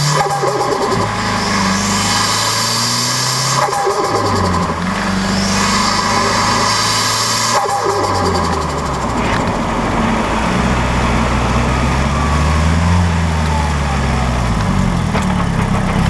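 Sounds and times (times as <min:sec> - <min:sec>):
turbo flutter: 0:00.0 - 0:10.1
turbocharged engine revving: 0:00.0 - 0:15.1.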